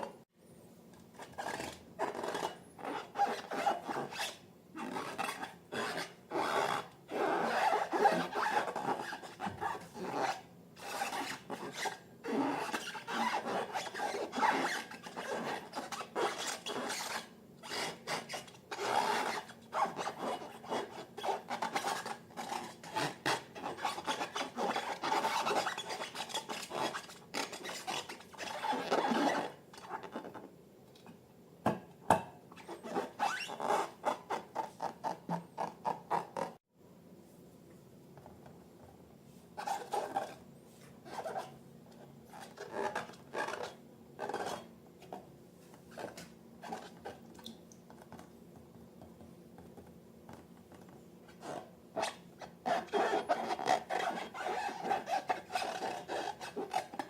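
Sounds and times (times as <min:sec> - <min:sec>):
rubbing and scraping of balloons: 0:01.2 - 0:30.4, 0:50.8 - 0:57.0.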